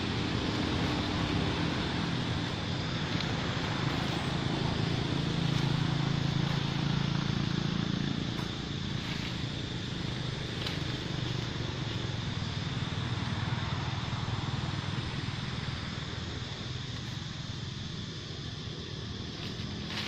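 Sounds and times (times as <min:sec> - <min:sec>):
motor humming: 0:00.0 - 0:12.8.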